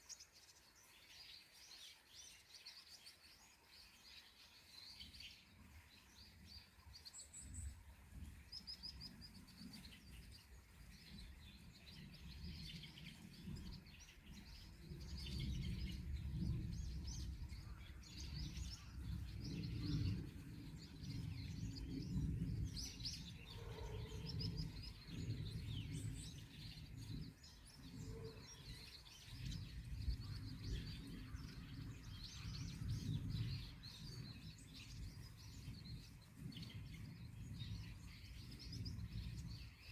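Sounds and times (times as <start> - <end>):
small birds chirping: 0.0 - 39.9
low rumble: 11.0 - 28.4.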